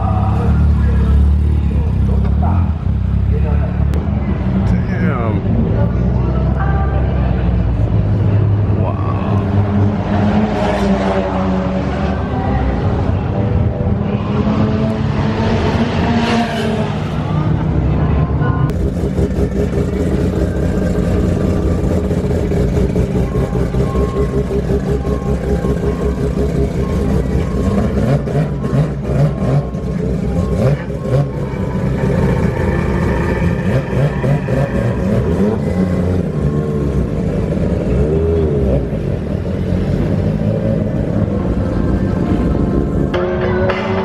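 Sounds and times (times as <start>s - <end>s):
car engines revving: 0.0s - 44.0s.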